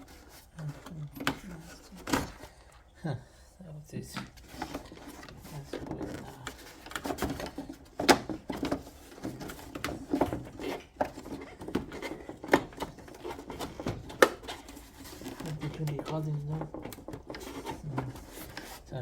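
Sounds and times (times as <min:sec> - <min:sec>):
hand tools clicking and knocking: 0:04.1 - 0:18.8.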